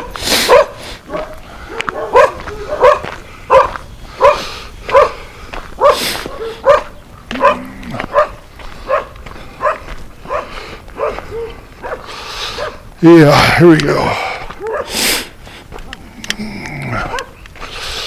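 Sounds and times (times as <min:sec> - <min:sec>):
dog barking: 0:00.0 - 0:12.9, 0:14.5 - 0:15.0, 0:16.9 - 0:17.4.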